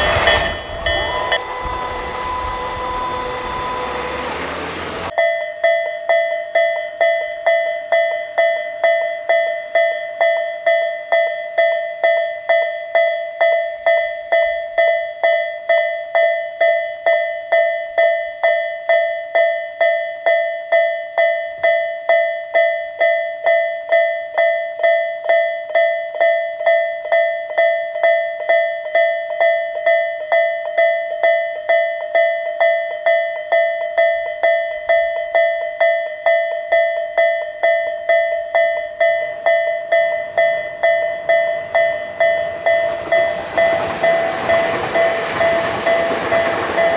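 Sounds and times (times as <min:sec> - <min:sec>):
level crossing alarm dings: 0:00.0 - 0:05.1, 0:32.7 - 0:46.9.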